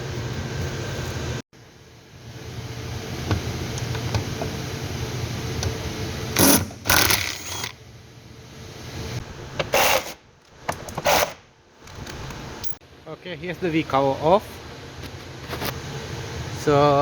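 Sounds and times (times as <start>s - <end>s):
power tool motor running: 6.4s - 7.8s, 9.7s - 10.2s, 11.0s - 11.4s.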